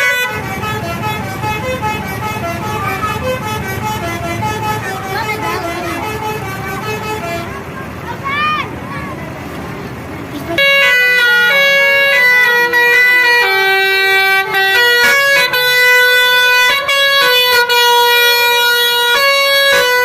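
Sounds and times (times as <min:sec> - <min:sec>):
multi-tone air horn playing a tune: 0:00.0 - 0:07.7, 0:10.4 - 0:20.0.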